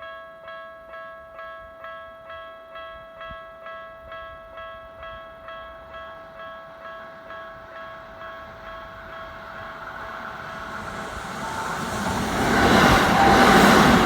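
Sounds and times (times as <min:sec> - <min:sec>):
steady underlying tone: 0:05.8 - 0:14.0.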